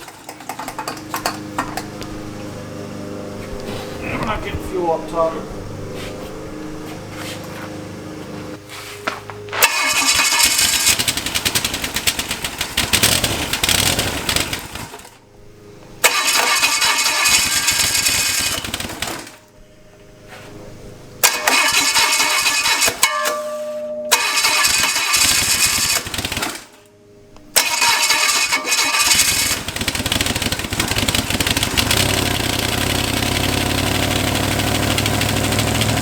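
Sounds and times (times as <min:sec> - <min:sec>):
starter cranking engine: 0:00.0 - 0:02.7, 0:09.6 - 0:15.2, 0:16.0 - 0:19.4, 0:21.2 - 0:23.1, 0:24.1 - 0:26.8, 0:27.5 - 0:36.0.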